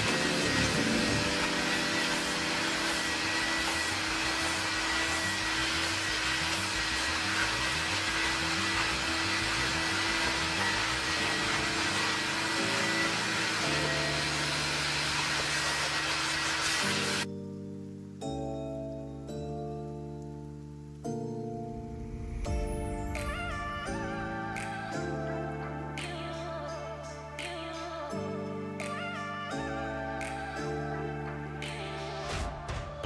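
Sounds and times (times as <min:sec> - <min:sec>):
whirring motor with rushing air: 0:00.0 - 0:17.3
background music with bass line: 0:00.0 - 0:33.0.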